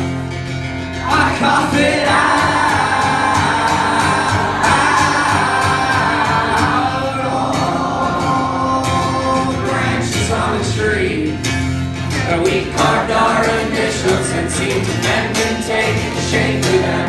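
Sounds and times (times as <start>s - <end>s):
guitar playing: 0.0s - 17.0s
person singing: 1.0s - 11.4s.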